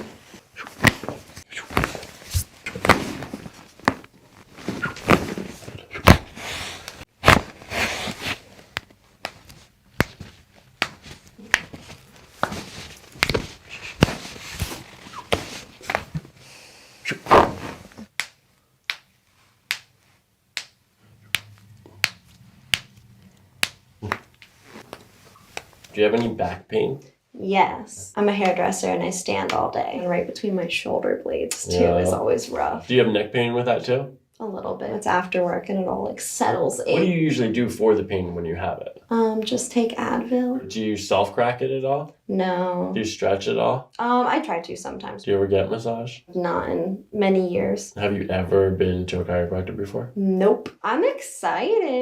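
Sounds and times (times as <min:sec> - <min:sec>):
body thudding on table: 0:00.0 - 0:06.4.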